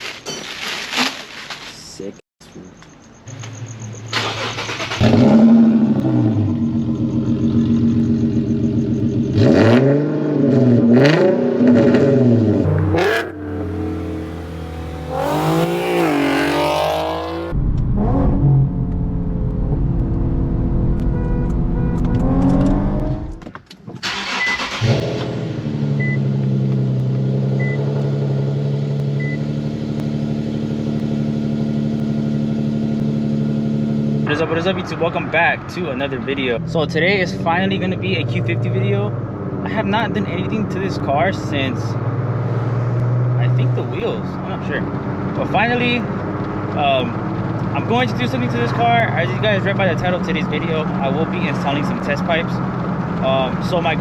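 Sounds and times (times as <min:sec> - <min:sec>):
car exhaust revving: 0:03.7 - 0:23.4, 0:24.2 - 0:35.4.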